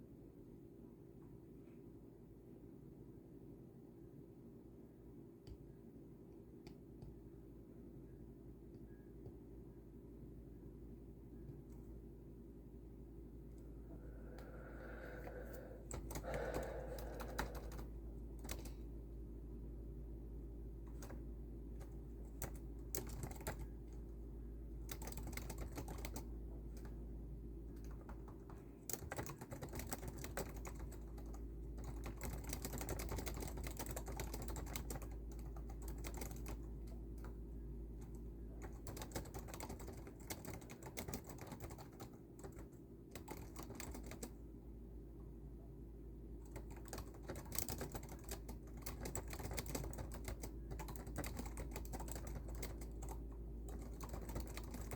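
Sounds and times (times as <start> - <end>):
steady low hum: 0.0 - 54.9
keyboard keystroke clicks: 15.9 - 18.8.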